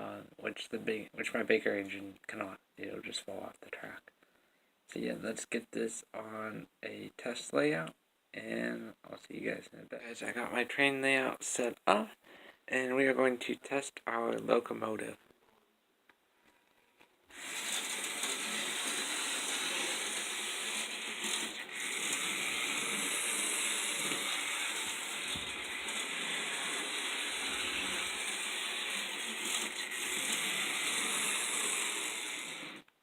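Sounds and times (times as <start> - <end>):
model train whirring and rattling on track: 17.3 - 32.9.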